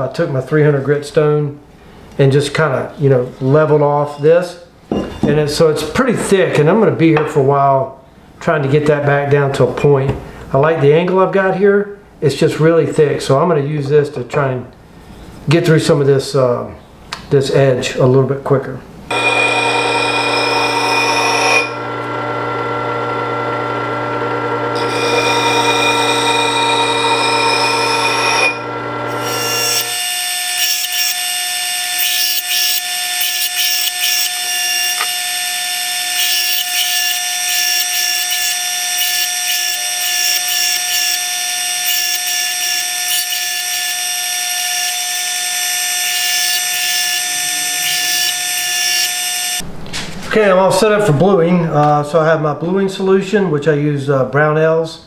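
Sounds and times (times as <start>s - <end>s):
powered sharpener grinding steel: 19.1s - 49.6s.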